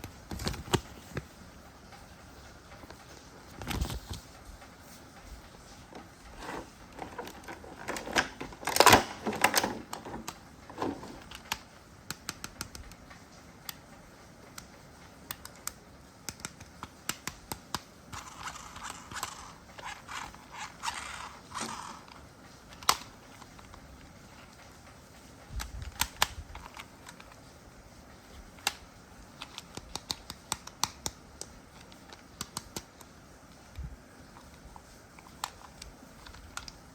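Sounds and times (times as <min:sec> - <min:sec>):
light clicks and taps: 0:09.3 - 0:17.9, 0:28.2 - 0:36.9.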